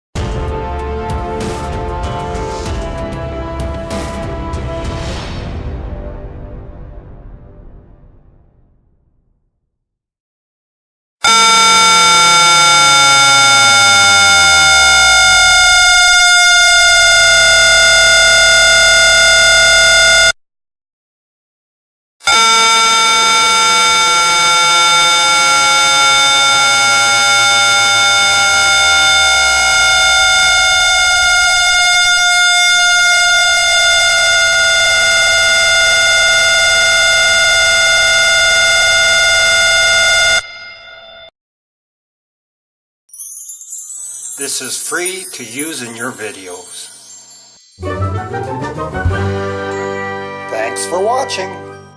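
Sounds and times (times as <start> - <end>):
horn-like siren wail: 11.2 - 20.4, 22.2 - 41.3.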